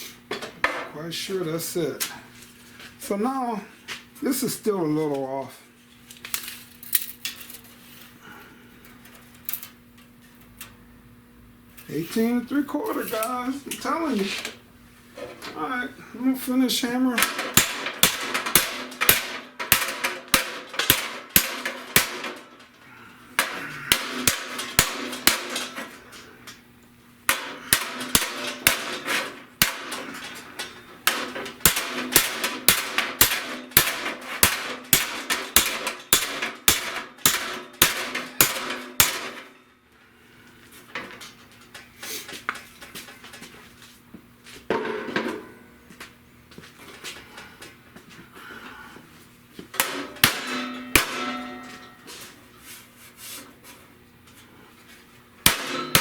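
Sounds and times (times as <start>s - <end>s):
hammer beating sheet steel: 16.9s - 22.7s, 23.4s - 26.1s, 27.3s - 39.6s, 49.8s - 52.3s, 55.4s - 56.0s.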